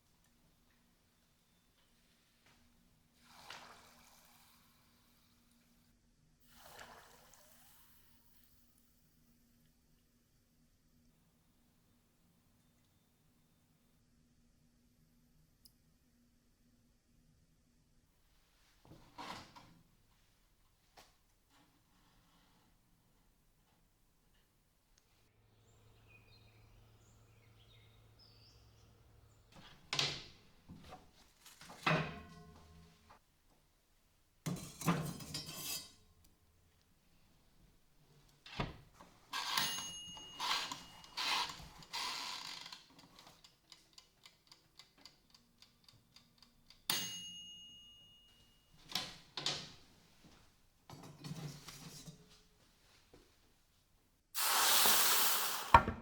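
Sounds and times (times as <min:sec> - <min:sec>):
tools set down on workbench: 0:31.6 - 0:32.9, 0:34.5 - 0:35.9.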